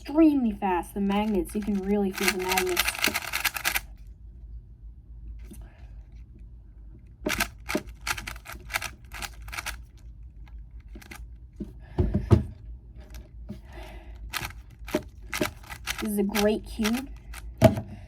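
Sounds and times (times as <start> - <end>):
puzzle cube clacking clicks: 1.2 - 3.9, 7.3 - 11.3, 14.2 - 17.7.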